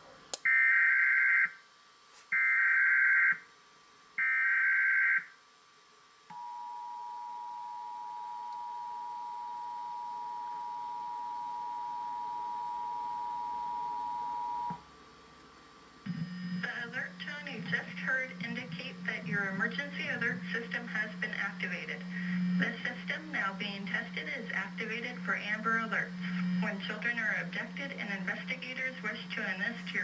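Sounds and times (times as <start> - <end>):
two-tone attention signal: 6.3 - 14.8.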